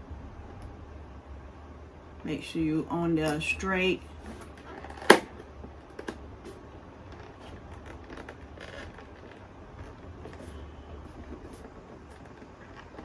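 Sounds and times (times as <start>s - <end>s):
paper rustling: 4.2s - 13.0s.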